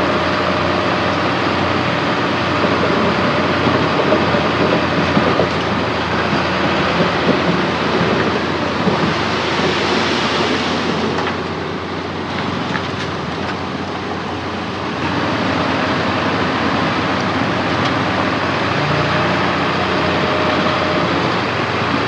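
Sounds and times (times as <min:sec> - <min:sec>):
steel tracks clattering: 0:00.0 - 0:15.0
bulldozer diesel engine running: 0:00.0 - 0:22.0.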